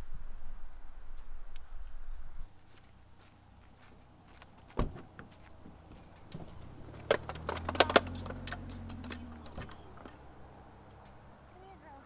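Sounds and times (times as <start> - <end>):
thump: 4.8 - 6.5
sharp clicks and knocks: 4.8 - 10.2.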